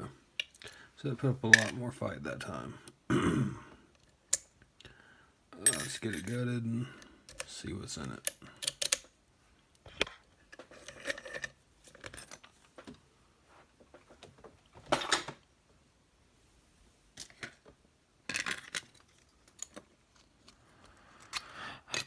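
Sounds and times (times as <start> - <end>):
padlock metal clicks and rattles: 7.3 - 7.5, 8.2 - 9.2, 18.3 - 20.6.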